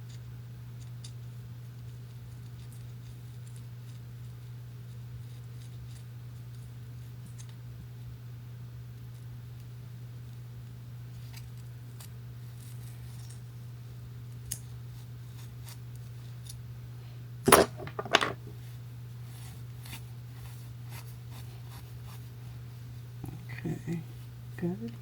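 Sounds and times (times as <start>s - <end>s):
steady low hum: 0.0s - 25.0s
styling tools clicking and rustling: 17.4s - 18.5s
clatter of knocks: 17.5s - 18.5s.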